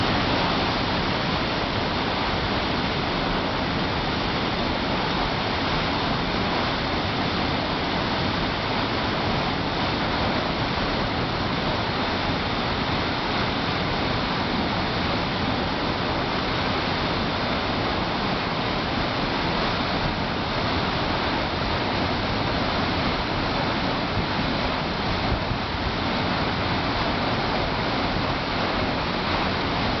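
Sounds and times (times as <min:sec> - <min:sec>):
waterfall rushing: 0:00.0 - 0:30.0.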